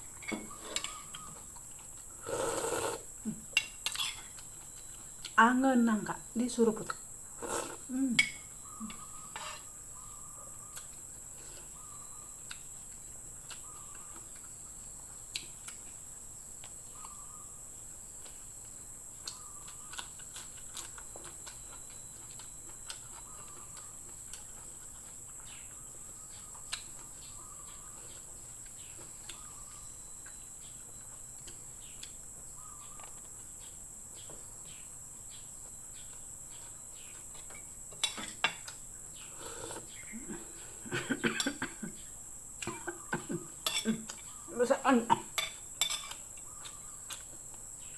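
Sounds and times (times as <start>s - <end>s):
insect chorus: 0.0s - 47.9s
person eating: 0.5s - 5.4s, 7.4s - 7.9s, 38.6s - 44.4s.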